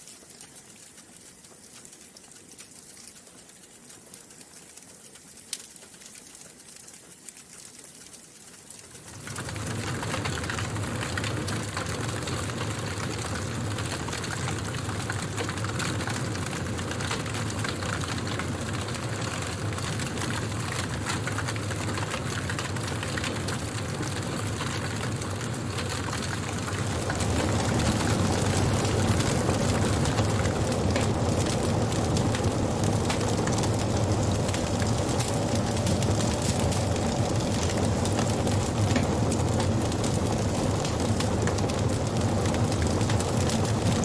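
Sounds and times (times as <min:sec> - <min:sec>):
wood fire crackling and hissing: 0:00.0 - 0:44.0
low rumble of flame: 0:09.0 - 0:44.0.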